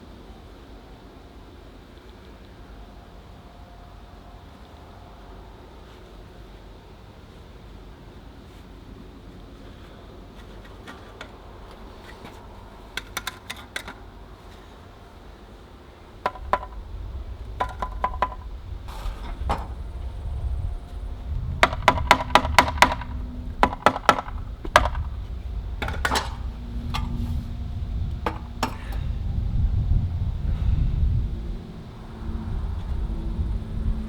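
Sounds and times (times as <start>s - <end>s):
steady low rumble: 16.0s - 34.0s.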